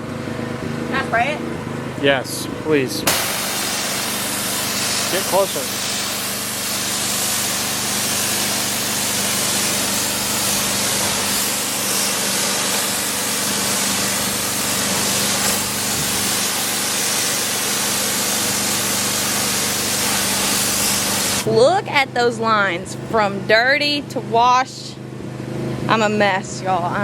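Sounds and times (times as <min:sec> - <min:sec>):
pressure washer motor hum: 0:00.0 - 0:22.0
high-pressure water jet hissing: 0:03.0 - 0:21.5.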